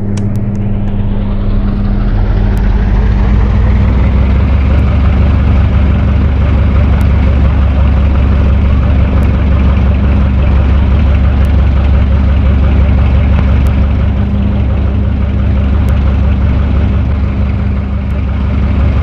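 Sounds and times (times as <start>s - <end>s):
electric fan running: 0.0s - 19.0s.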